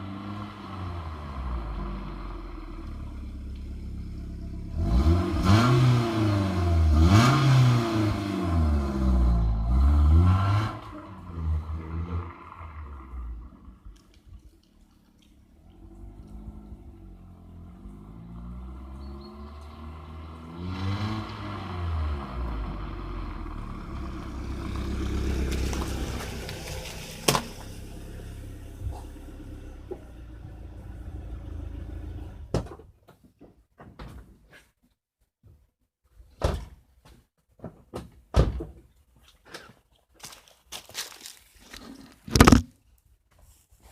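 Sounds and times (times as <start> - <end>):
car engine revving: 0.0 - 13.7, 15.8 - 32.5.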